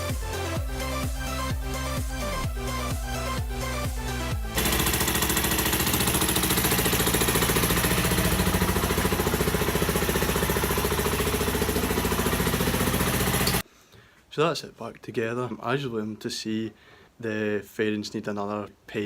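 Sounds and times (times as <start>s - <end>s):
background music: 0.0s - 4.6s
motorcycle engine idling: 4.6s - 13.6s.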